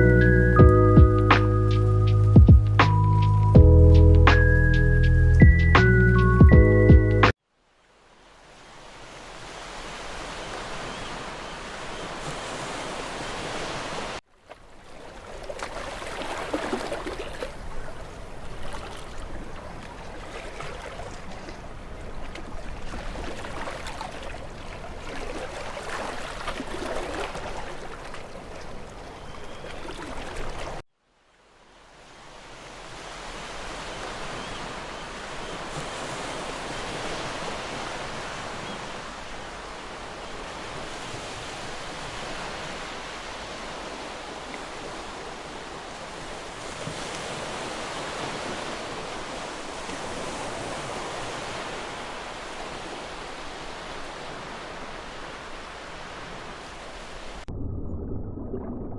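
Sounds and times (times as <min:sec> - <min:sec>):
ocean waves rushing: 0:08.7 - 0:30.8.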